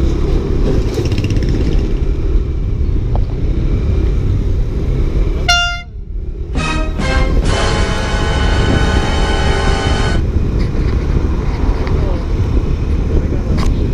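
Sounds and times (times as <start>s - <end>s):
vehicle rumble: 0.0s - 13.9s
horn blast: 5.4s - 5.9s, 6.5s - 10.2s.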